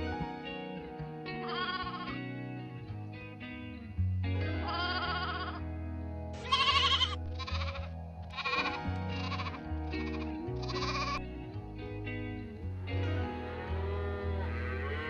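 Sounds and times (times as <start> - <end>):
soft background music: 0.0 - 15.0
sheep or goat bleating: 1.4 - 2.1, 4.6 - 5.6, 6.4 - 11.2.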